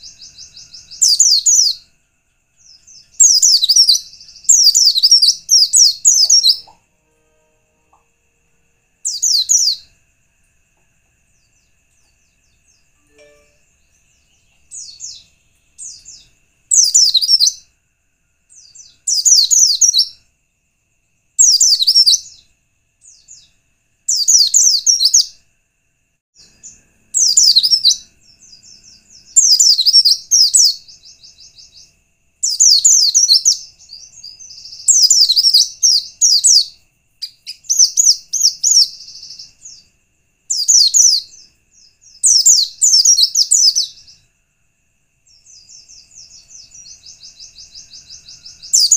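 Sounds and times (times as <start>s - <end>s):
bird twittering song: 0.0s - 6.9s, 9.0s - 10.2s, 11.2s - 17.7s, 18.5s - 20.2s, 21.4s - 25.4s, 26.4s - 44.3s, 45.3s - 48.9s
faint steady high tone: 0.0s - 25.4s.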